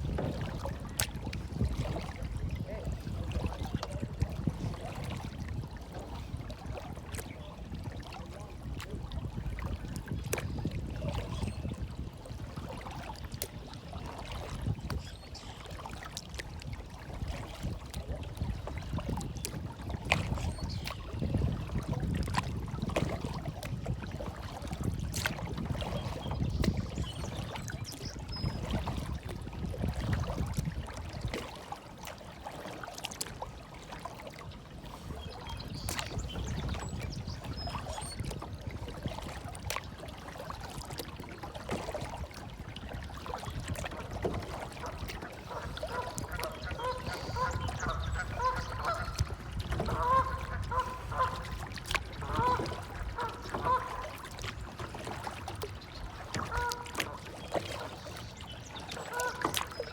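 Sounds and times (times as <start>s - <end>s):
water lapping and sloshing: 0.0s - 59.9s
small splashy clicks: 25.1s - 25.4s, 33.0s - 33.4s, 51.8s - 52.1s, 56.3s - 57.9s, 58.7s - 59.9s.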